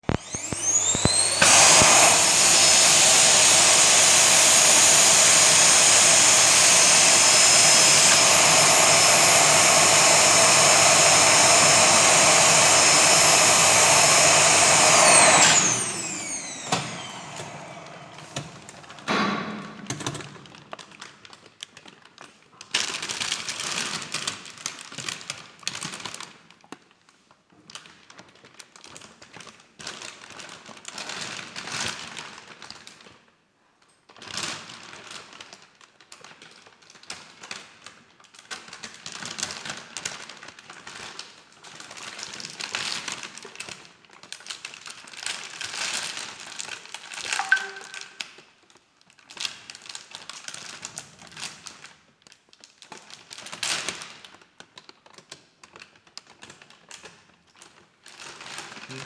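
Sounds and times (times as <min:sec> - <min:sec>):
vacuum cleaner motor running: 0:00.0 - 0:20.5, 0:47.4 - 0:48.2.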